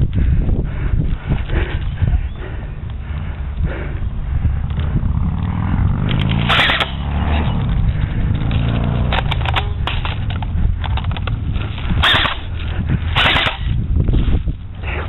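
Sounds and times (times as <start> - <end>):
low microphone rumble: 0.0 - 15.0
airsoft gun bursts: 6.5 - 7.0, 12.0 - 12.5, 13.1 - 13.8.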